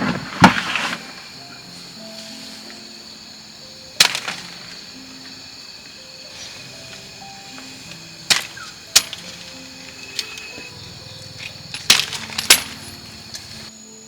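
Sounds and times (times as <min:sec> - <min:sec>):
soft background music: 0:00.0 - 0:14.0
chopping strikes: 0:04.0 - 0:04.8, 0:08.3 - 0:09.6, 0:11.4 - 0:13.5.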